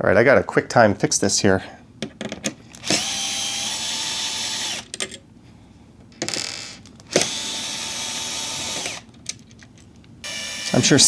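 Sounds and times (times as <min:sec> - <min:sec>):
electric screwdriver whirring: 0:02.8 - 0:04.9, 0:07.1 - 0:09.1, 0:10.2 - 0:10.9.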